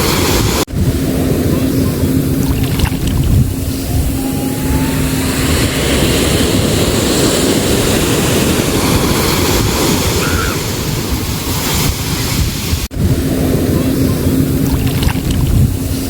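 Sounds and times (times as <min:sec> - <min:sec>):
sea waves and surf: 0:00.0 - 0:16.0
wind buffeting microphone: 0:00.0 - 0:16.0.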